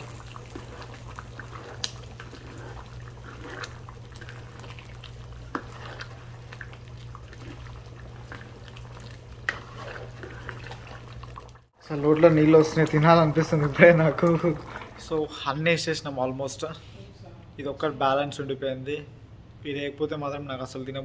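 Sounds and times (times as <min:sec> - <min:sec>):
spoon stirring curry in pot: 0:00.3 - 0:11.4.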